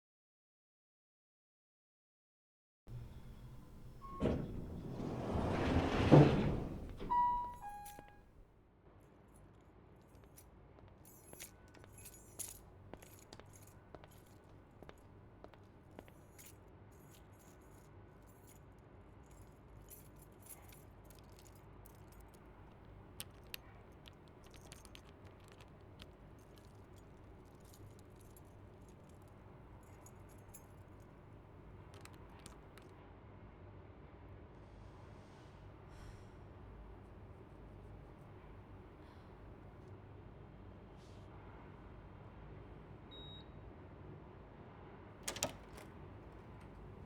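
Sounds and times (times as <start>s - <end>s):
light metallic clinks: 11.0s - 15.0s.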